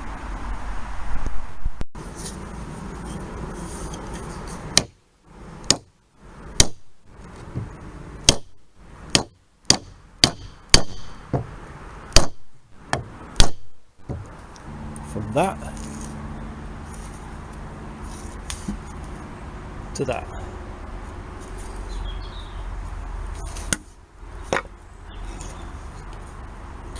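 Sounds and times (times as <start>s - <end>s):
hammer strikes with metallic ring: 9.2s - 11.5s.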